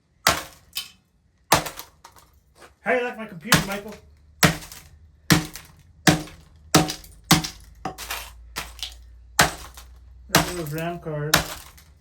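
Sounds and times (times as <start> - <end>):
breaking parts cracking and clinking: 0.1 - 2.6, 3.4 - 12.0
hard blows smashing computer: 3.5 - 12.0.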